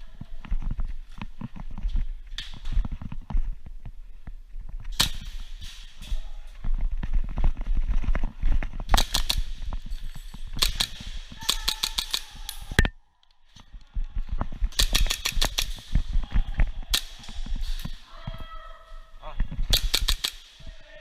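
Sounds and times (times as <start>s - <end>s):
airsoft guns firing: 8.9s - 9.7s, 10.6s - 12.7s, 14.7s - 16.3s, 19.7s - 20.6s.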